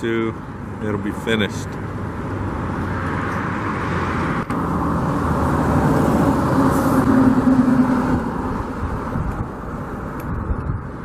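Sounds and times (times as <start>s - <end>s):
road traffic noise: 0.0s - 11.0s
passing vehicle engine hum: 0.3s - 11.0s.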